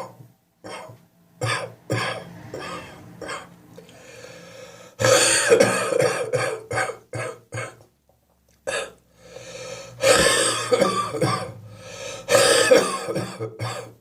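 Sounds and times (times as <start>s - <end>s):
person coughing wetly: 0.0s - 3.5s, 5.0s - 7.8s, 10.0s - 11.6s, 12.3s - 14.0s
quiet breath: 3.8s - 5.0s, 9.1s - 10.0s, 11.6s - 12.3s.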